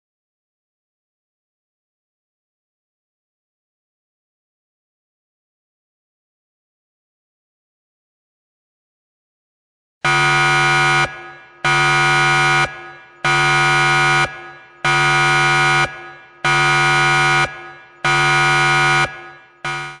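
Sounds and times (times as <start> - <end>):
electronic alarm buzzer: 10.0 - 20.0.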